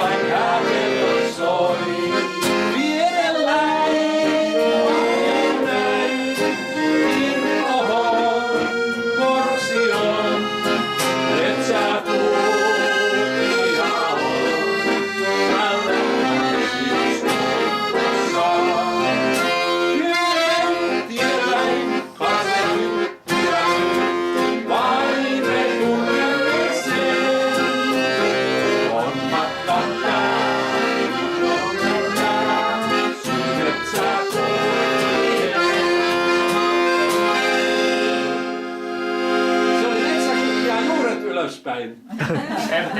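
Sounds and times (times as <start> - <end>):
accordion playing melody: 0.0 - 41.7.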